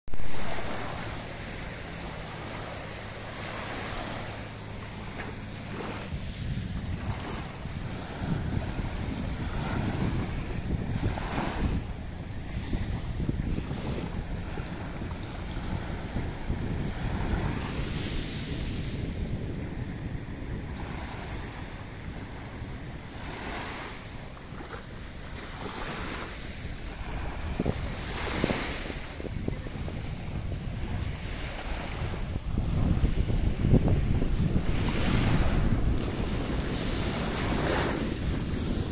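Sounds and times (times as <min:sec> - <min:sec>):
rushing water: 0:00.1 - 0:15.2
rushing sea water: 0:00.1 - 0:38.9
speedboat engine humming: 0:00.1 - 0:38.9
wind buffeting microphone: 0:00.1 - 0:38.9.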